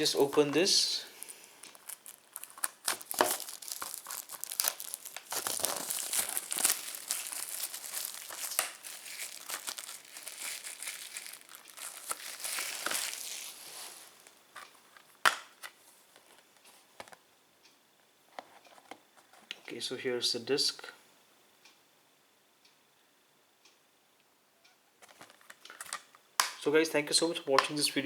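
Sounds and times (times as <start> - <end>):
plastic wrap tearing and crinkling: 0.0 - 14.4.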